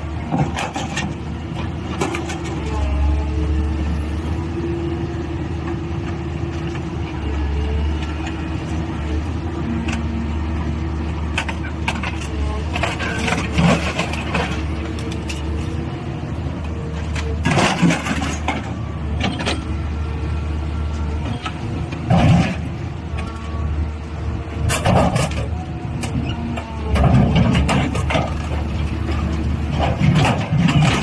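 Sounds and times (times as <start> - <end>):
metal crunching and clanking: 17.1 - 19.7, 26.9 - 31.0.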